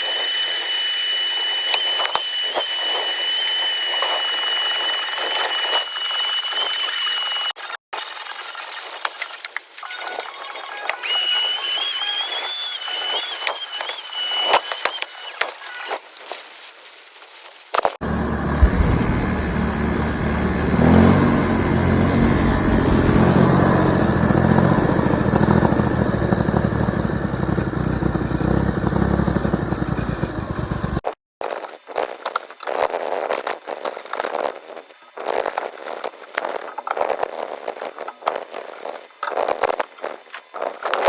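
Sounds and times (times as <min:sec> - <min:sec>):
welder engine running: 0:18.0 - 0:31.0.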